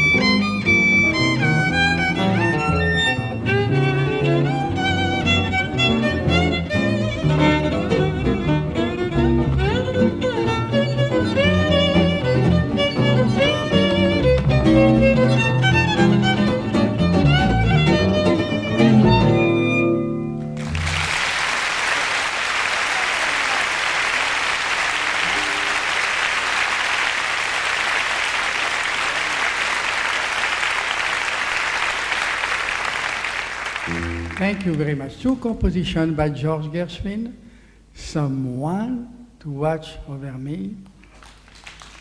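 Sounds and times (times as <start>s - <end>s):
jazz violin and guitar: 0.0s - 19.9s
audience applause: 20.6s - 34.9s, 41.1s - 42.0s.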